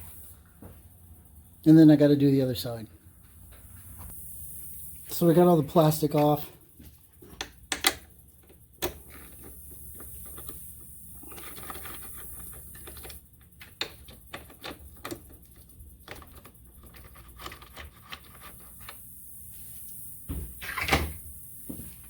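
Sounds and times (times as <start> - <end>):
hands handling plastic parts: 6.1 - 19.0.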